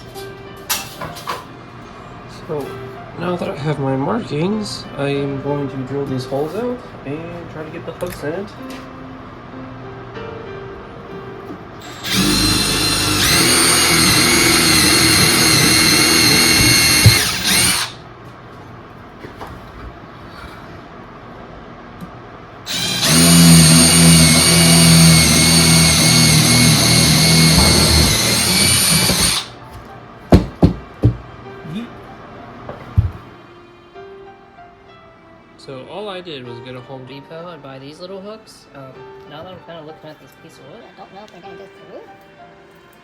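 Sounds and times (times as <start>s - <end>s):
power drill boring into wood: 11.8s - 18.0s, 22.7s - 29.5s.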